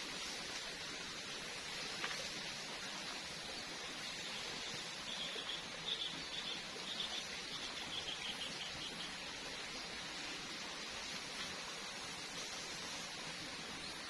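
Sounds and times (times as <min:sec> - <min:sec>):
steady background hiss: 0:00.0 - 0:14.0
bird chirping: 0:04.1 - 0:09.3.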